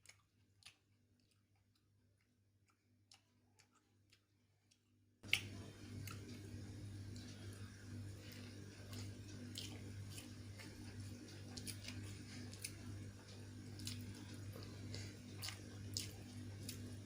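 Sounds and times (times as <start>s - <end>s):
chewing and mouth smacking: 0.0s - 17.0s
steady low hum: 5.2s - 17.0s.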